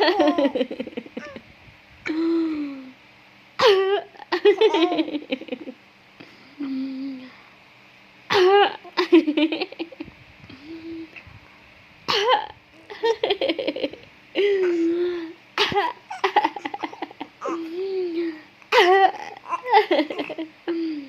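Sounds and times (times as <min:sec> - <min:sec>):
baby laughing: 0:00.0 - 0:01.4, 0:04.4 - 0:05.5, 0:15.6 - 0:17.7, 0:18.7 - 0:20.5
woman coughing playfully: 0:03.6 - 0:04.0, 0:08.3 - 0:08.7, 0:12.1 - 0:12.5.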